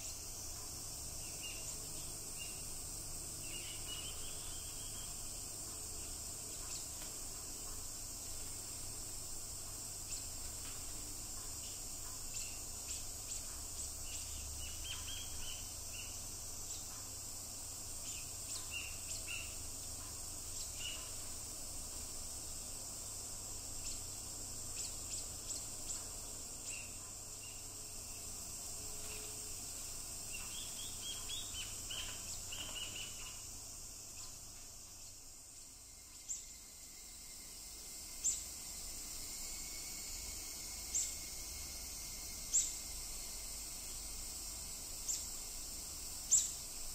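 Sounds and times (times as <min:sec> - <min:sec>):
insects droning: 0:00.0 - 0:46.9
small birds chirping: 0:03.3 - 0:05.3, 0:11.6 - 0:16.9, 0:18.0 - 0:21.2, 0:23.8 - 0:27.7, 0:30.2 - 0:33.5, 0:46.3 - 0:46.6.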